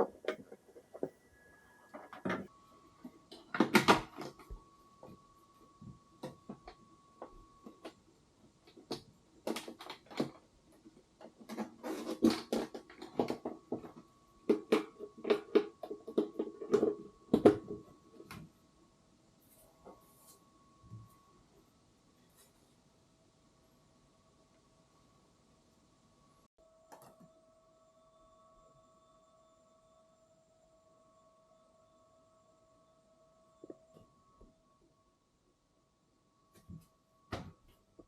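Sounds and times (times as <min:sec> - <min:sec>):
faint steady tone: 0:00.0 - 0:09.5, 0:13.2 - 0:38.0
small parts clicking and knocking: 0:08.6 - 0:18.4.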